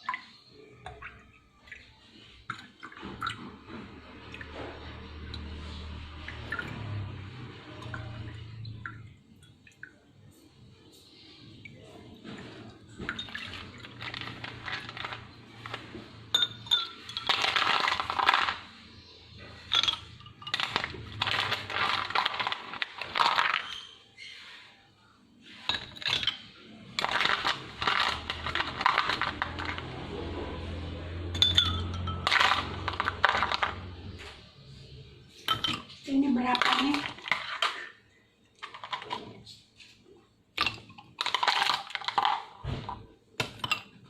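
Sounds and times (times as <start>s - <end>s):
small hard objects clinking: 13.0s - 18.8s, 19.4s - 24.0s, 25.6s - 30.2s, 31.2s - 34.1s, 35.4s - 37.9s, 38.6s - 39.4s, 40.6s - 42.7s.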